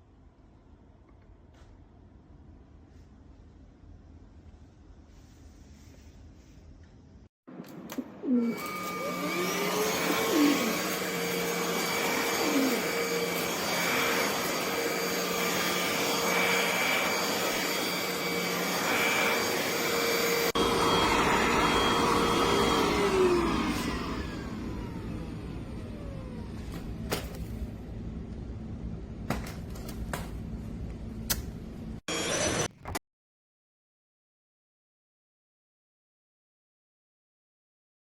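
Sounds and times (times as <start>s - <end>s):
vacuum motor whine and air rush: 7.9s - 27.1s.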